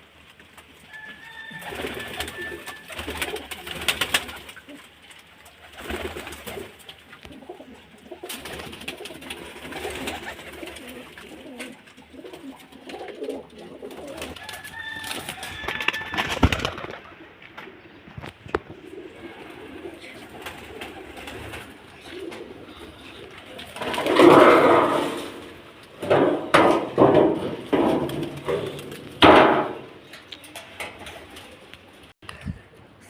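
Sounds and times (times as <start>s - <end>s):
pigeons cooing: 1.1s - 32.1s
clicks and knocks: 23.9s - 31.3s.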